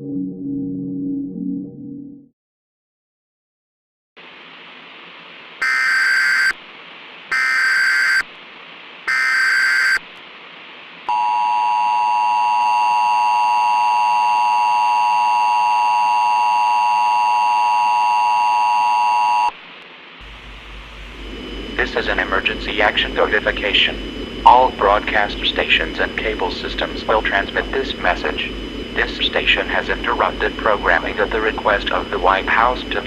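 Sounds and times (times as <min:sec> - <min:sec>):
two-tone attention signal: 0:05.6 - 0:06.5, 0:09.1 - 0:10.0
steady hiss: 0:19.7 - 0:33.0
digital header data bursts: 0:20.2 - 0:33.0.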